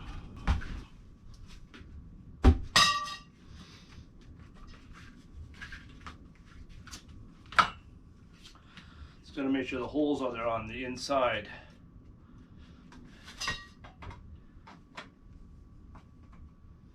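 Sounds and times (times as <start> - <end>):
ringing metal clang: 2.8 - 3.3.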